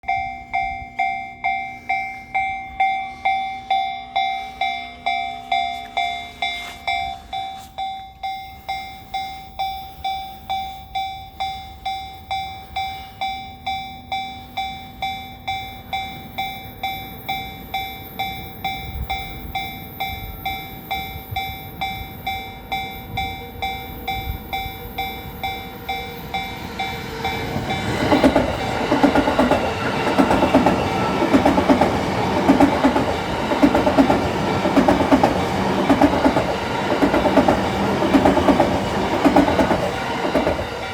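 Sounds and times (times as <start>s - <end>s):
level-crossing warning bell: 0.0s - 40.9s
train rumble: 21.0s - 40.9s
train wheel clatter: 24.1s - 40.9s.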